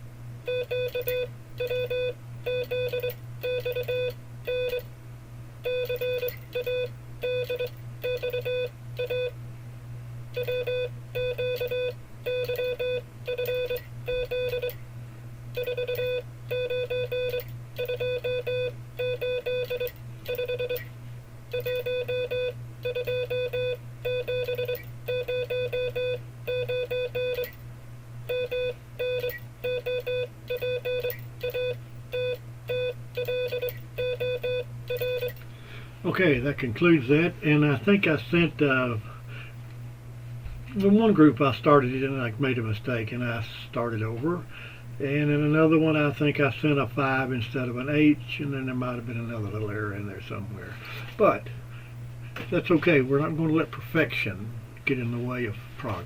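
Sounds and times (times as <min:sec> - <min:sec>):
morse code tone: 0:00.5 - 0:04.9, 0:05.6 - 0:09.3, 0:10.4 - 0:14.8, 0:15.6 - 0:20.8, 0:21.5 - 0:27.5, 0:28.3 - 0:35.4.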